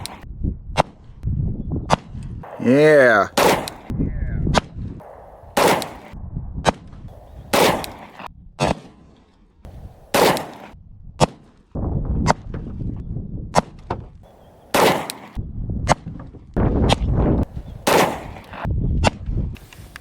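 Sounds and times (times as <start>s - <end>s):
gunshots with echo: 2.4s - 9.0s, 9.7s - 11.4s, 14.3s - 15.4s, 17.7s - 18.7s.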